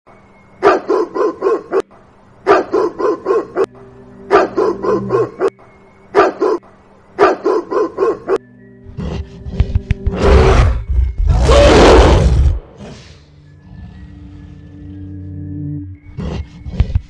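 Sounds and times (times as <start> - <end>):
dog barking: 0.6 - 3.7, 4.3 - 5.5, 6.2 - 6.6, 7.2 - 8.4.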